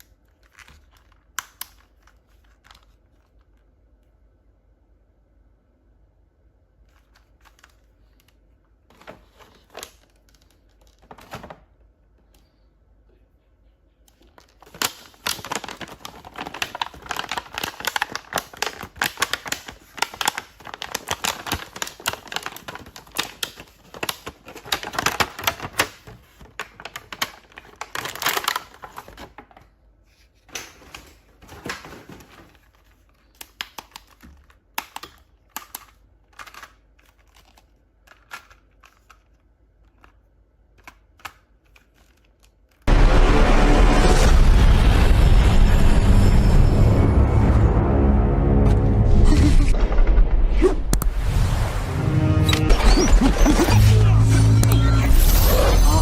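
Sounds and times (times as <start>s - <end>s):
plastic toys clicking and rattling: 14.1s - 29.6s, 30.7s - 42.8s.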